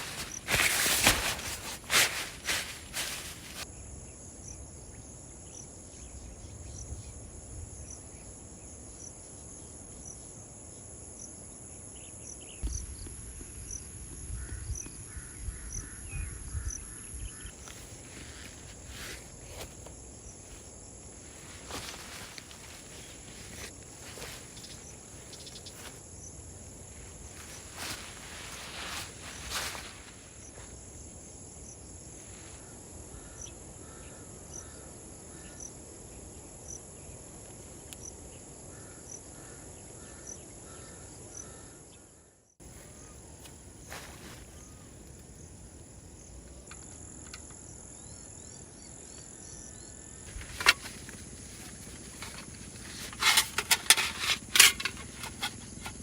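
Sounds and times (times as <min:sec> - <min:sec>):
insects shrilling: 0:00.0 - 0:03.7, 0:17.4 - 0:32.4
soft rustles: 0:00.0 - 0:03.7, 0:17.4 - 0:30.9, 0:42.6 - 0:45.3, 0:50.2 - 0:56.0
wind rumbling on microphone: 0:12.6 - 0:19.6.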